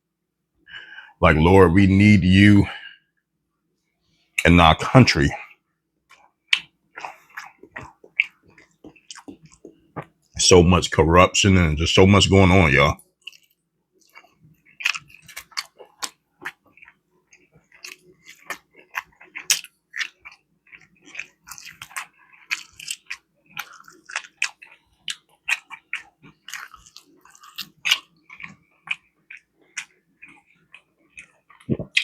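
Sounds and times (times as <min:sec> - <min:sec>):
person chewing food: 0:06.1 - 0:10.3, 0:13.0 - 0:32.0.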